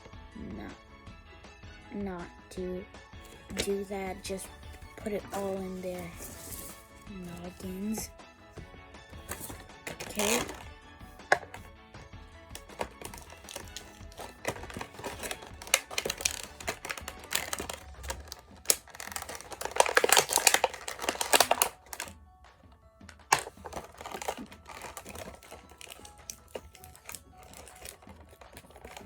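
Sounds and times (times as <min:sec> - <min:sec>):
packaging crinkling: 0:03.2 - 0:08.0, 0:09.1 - 0:11.7, 0:12.5 - 0:22.2, 0:23.1 - 0:29.0
plastic toy pieces rattling: 0:04.3 - 0:08.0, 0:09.2 - 0:11.7, 0:12.5 - 0:22.1, 0:23.1 - 0:29.0.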